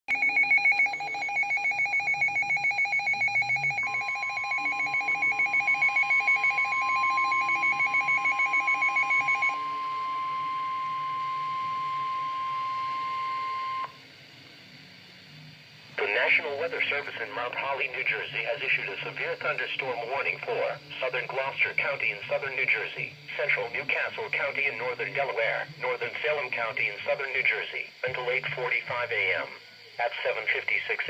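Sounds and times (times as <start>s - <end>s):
pulsing electronic alarm beeps: 0.1s - 14.0s
steady warning alarm tone: 0.1s - 14.0s.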